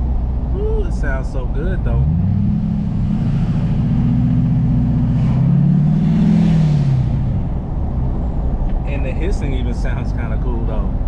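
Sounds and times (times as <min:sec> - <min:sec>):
pickup truck engine accelerating: 0:01.5 - 0:08.8.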